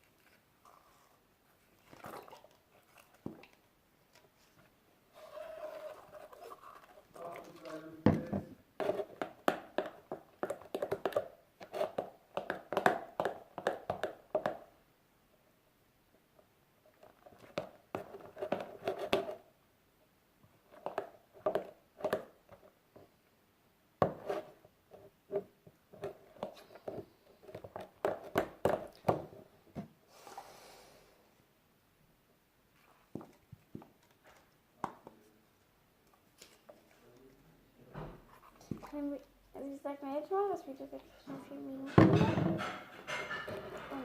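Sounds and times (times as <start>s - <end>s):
slime being mixed by hand: 0.0s - 14.6s.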